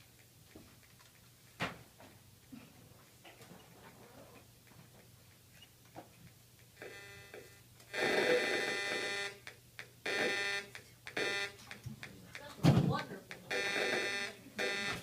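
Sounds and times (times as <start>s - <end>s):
harsh buzzing tone: 6.8s - 12.5s, 13.2s - 15.0s.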